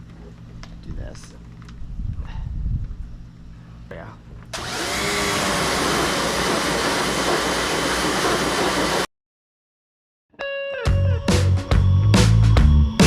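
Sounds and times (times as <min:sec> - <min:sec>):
pressure washer motor: 0:04.6 - 0:09.1
music: 0:10.3 - 0:13.0.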